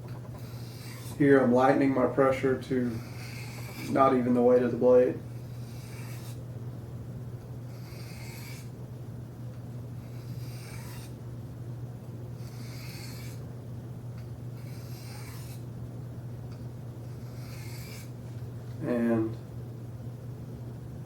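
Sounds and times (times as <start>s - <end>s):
steady low hum: 0.0s - 21.0s
knife scraping on sharpening plate: 14.7s - 15.6s.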